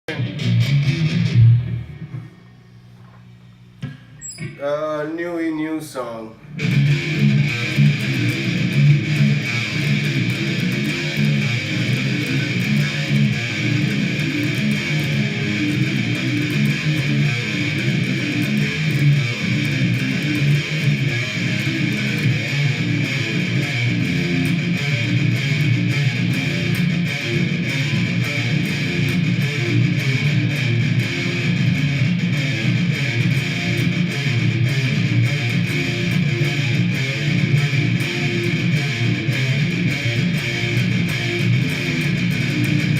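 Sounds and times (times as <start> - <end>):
guitars and bass playing: 0.1 - 42.9.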